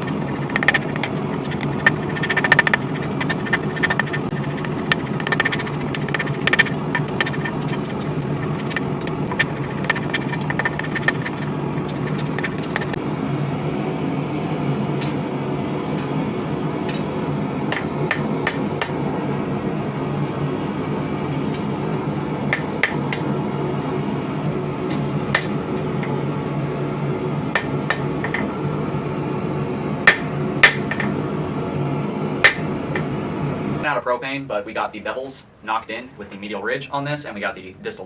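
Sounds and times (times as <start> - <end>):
gas forge drone: 0.0 - 38.0
hammer striking blade on anvil: 17.7 - 19.0, 27.6 - 28.4, 30.1 - 31.1, 32.4 - 32.6.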